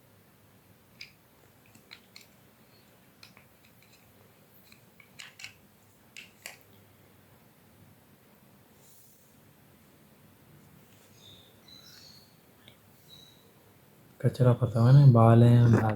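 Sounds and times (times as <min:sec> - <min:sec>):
clicks and scrapes of plastic parts: 0:00.9 - 0:06.6, 0:15.6 - 0:15.9.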